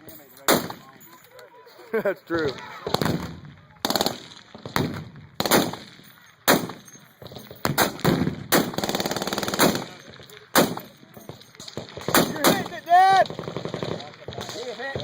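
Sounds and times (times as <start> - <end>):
machine-gun fire: 2.8 - 6.9, 7.6 - 15.0.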